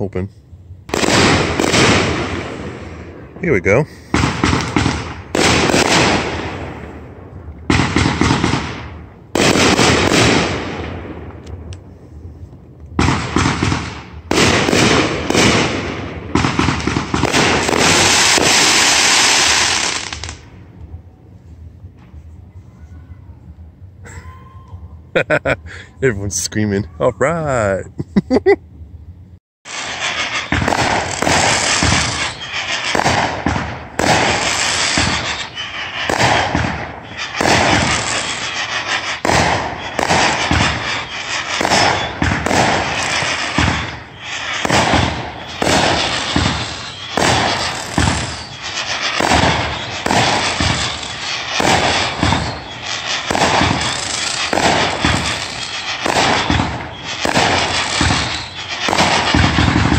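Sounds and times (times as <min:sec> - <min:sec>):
fireworks bangs and crackles: 0:00.0 - 0:21.0, 0:29.7 - 0:59.9.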